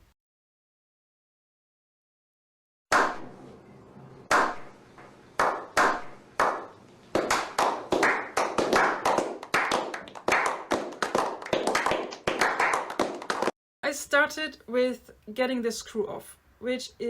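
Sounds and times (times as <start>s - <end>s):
hands clapping: 4.3s - 13.6s.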